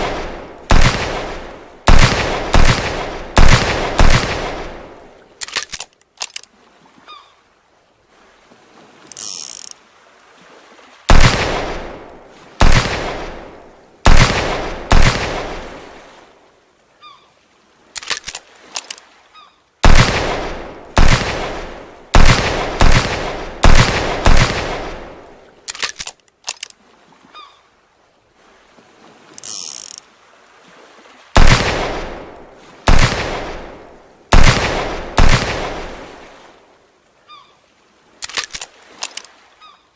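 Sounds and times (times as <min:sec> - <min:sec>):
revolver gunshots with echo: 0:00.0 - 0:05.0, 0:11.1 - 0:12.0, 0:12.6 - 0:15.6, 0:19.8 - 0:25.2, 0:31.4 - 0:36.0
small mechanical clicks: 0:09.1 - 0:09.8, 0:29.4 - 0:30.0, 0:38.2 - 0:39.3.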